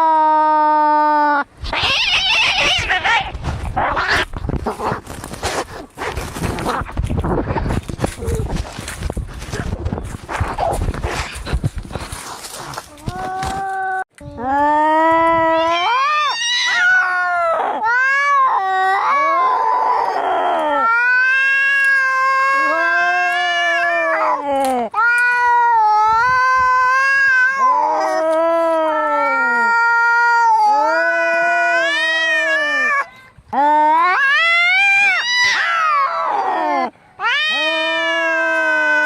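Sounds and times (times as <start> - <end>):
cats yowling in a fight: 1.6 - 4.8, 14.6 - 39.0.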